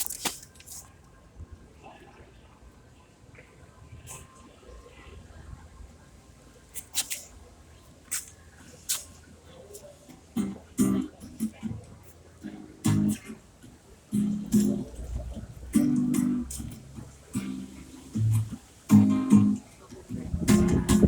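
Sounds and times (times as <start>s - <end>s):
guitar strumming chords: 10.4s - 21.0s.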